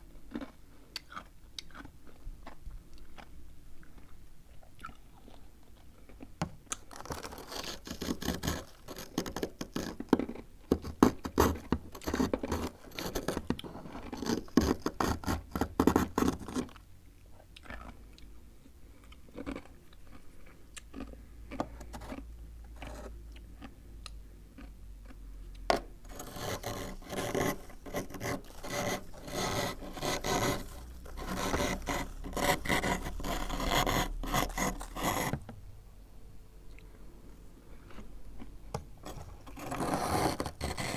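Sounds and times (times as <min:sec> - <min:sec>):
spoon scraping frost: 0:06.8 - 0:10.1, 0:26.1 - 0:35.4, 0:39.0 - 0:40.9.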